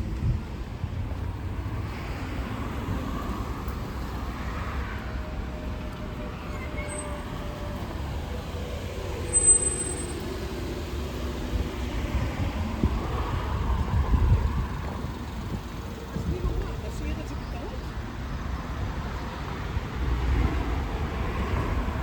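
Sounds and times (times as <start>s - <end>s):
vehicles passing with low rumble: 0.0s - 22.0s
short high-pitched squeak: 9.3s - 10.3s.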